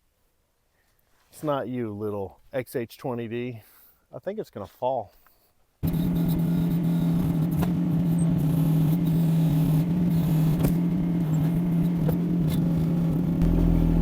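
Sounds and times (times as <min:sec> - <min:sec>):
excavator engine humming: 0:05.8 - 0:14.0.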